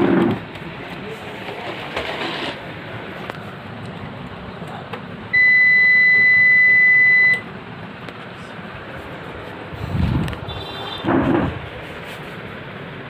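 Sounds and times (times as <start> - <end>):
computer buzzer long high beep: 5.4 - 7.4.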